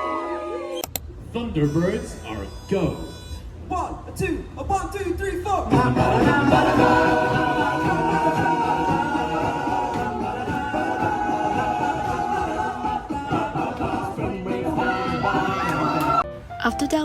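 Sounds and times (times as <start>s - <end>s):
a cappella group singing in harmony: 5.5s - 16.3s.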